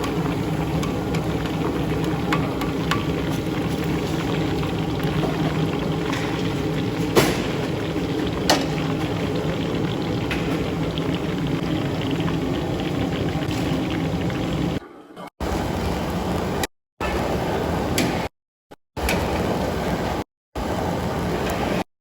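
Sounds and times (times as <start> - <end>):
pot boiling: 0.0 - 14.8.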